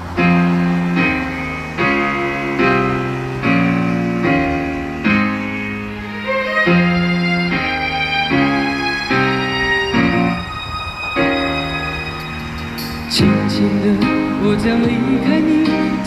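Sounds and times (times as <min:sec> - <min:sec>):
slow pop ballad instrumental: 0:11.1 - 0:16.0.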